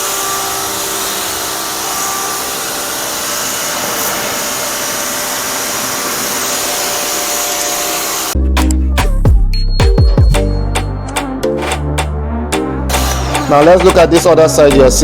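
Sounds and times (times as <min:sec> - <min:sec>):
pressure washer spraying: 0:00.0 - 0:08.4, 0:12.9 - 0:14.6
electronic music with a beat: 0:08.4 - 0:15.0.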